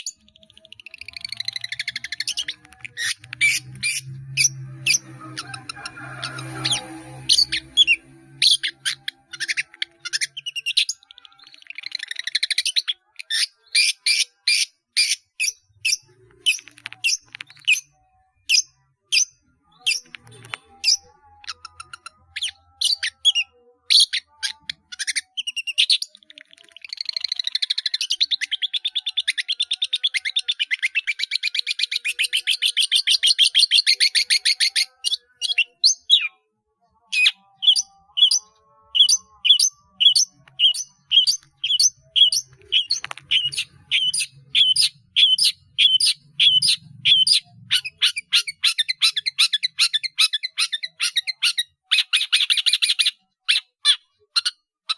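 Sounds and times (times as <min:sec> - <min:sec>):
bird singing chirps and whistles: 0:37.2 - 0:53.1.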